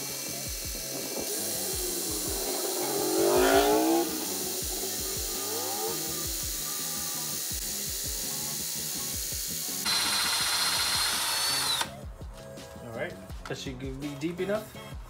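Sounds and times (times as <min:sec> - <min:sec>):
power drill boring into metal: 0:00.0 - 0:12.0
background music beat: 0:00.0 - 0:15.0.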